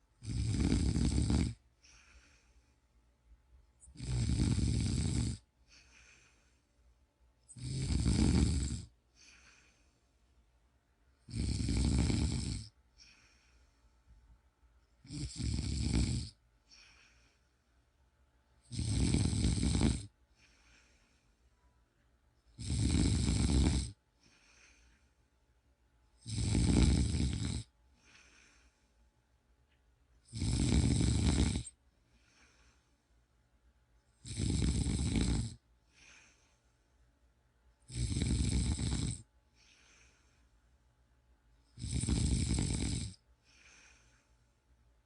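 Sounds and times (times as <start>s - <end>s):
person snoring: 0.2s - 2.6s, 3.8s - 6.6s, 7.5s - 9.9s, 11.2s - 13.6s, 15.0s - 17.4s, 18.6s - 21.2s, 22.5s - 25.0s, 26.2s - 28.8s, 30.2s - 32.9s, 34.2s - 36.5s, 37.9s - 40.4s, 41.8s - 44.3s
faint breaths: 1.5s - 4.6s, 5.4s - 7.6s, 8.3s - 11.3s, 11.9s - 15.4s, 16.3s - 18.0s, 19.2s - 21.9s, 23.1s - 25.5s, 26.6s - 29.4s, 30.1s - 33.4s, 34.0s - 40.9s, 41.5s - 45.0s.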